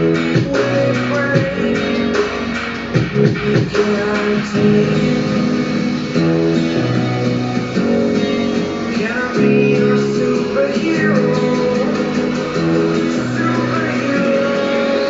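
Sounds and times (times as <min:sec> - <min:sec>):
guitar-led song through tv speakers: 0:00.0 - 0:15.0.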